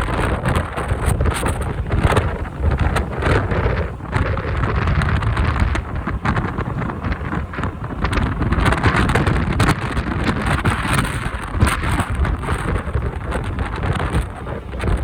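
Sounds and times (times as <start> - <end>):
motorcycle running: 0.0 - 15.0
strong wind buffeting microphone: 0.0 - 15.0.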